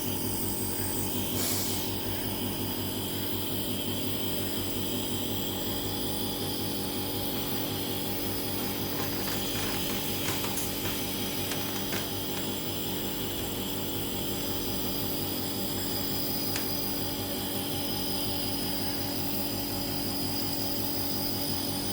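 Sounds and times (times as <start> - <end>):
small electric compressor humming: 0.0 - 21.9
short hiss: 1.4 - 1.9.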